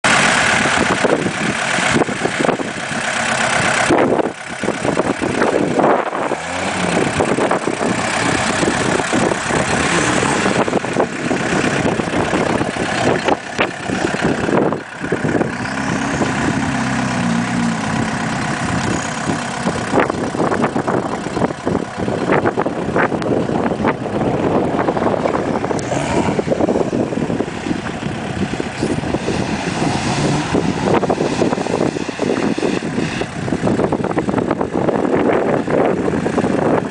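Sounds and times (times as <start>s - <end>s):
diesel engine running: 0.0s - 36.9s
turbocharger whistling: 4.9s - 20.7s.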